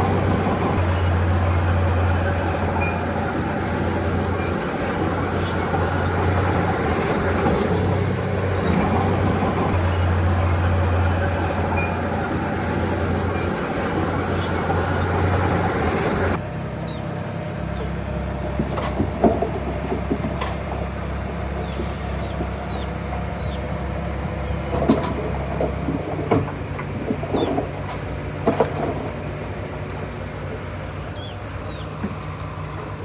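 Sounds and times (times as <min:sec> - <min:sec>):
diesel engine running: 0:00.0 - 0:33.0
clanks of rock and steel: 0:18.6 - 0:21.7.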